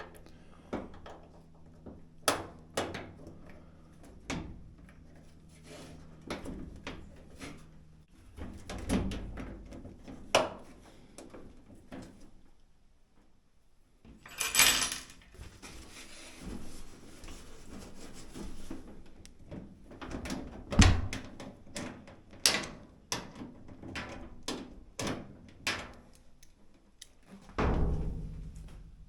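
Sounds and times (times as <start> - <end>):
heavy thump: 27.6 - 29.0.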